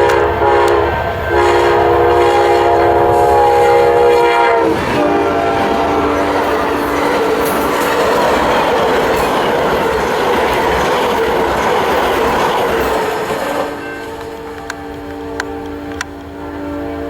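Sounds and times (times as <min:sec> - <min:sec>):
train horn chord: 0:00.0 - 0:08.5, 0:13.6 - 0:17.0
train wheels rushing on rails: 0:00.0 - 0:17.0.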